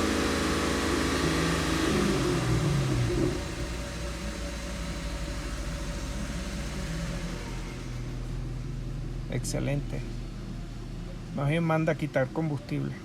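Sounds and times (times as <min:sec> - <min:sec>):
car engine revving then idling: 0:00.0 - 0:08.5.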